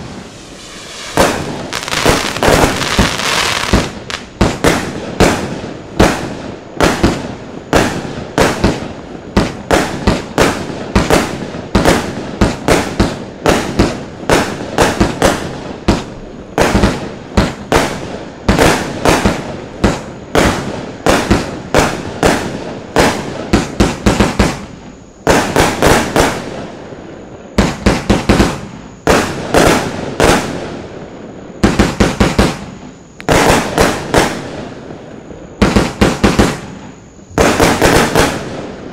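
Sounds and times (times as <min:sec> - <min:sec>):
fireworks bangs with crackle: 0:00.0 - 0:38.9.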